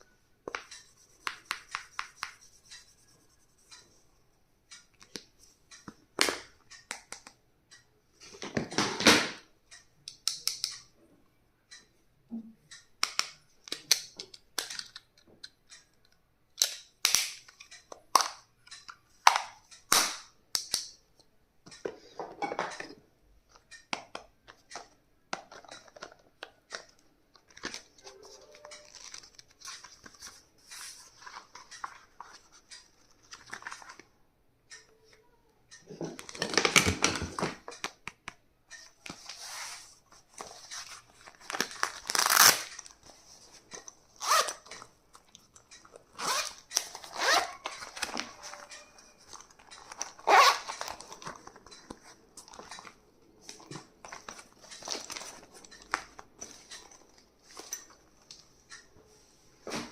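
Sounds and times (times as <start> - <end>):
packaging rustling: 40.4 - 43.0
packaging clicks and snaps: 41.2 - 43.0.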